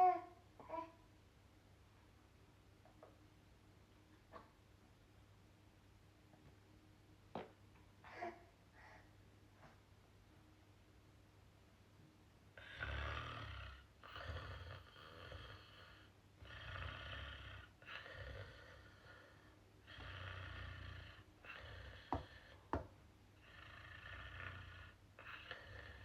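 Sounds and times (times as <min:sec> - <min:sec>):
woman snoring softly: 0:12.6 - 0:22.8, 0:23.4 - 0:26.0.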